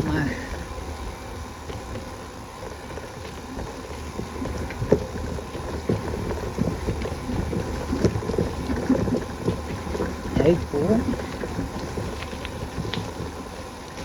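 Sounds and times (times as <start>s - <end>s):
bicycle knocking and rattling: 0.0s - 14.0s
wind buffeting microphone: 0.0s - 14.0s.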